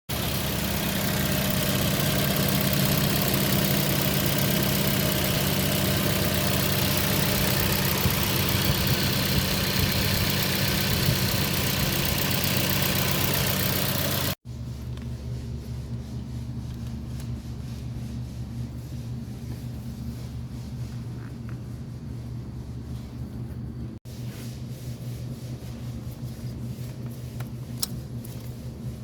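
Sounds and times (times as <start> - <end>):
car engine idling: 0.1 - 14.4.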